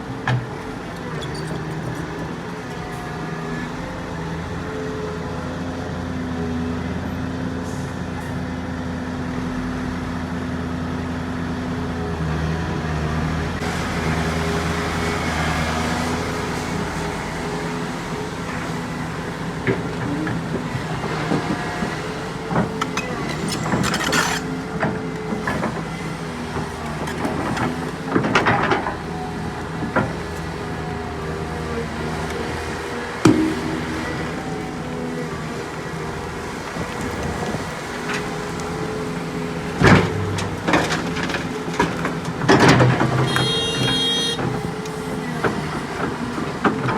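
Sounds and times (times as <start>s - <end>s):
heavy diesel machinery running: 0.0s - 46.9s
sharp knocks and clatter: 33.2s - 35.2s.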